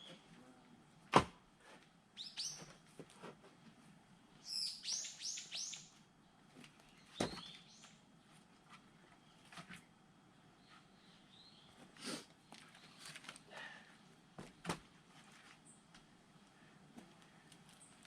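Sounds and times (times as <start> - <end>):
axe splitting firewood: 1.1 - 1.4
bird chirping: 2.2 - 2.8, 4.4 - 6.0, 6.8 - 8.0, 10.6 - 11.8.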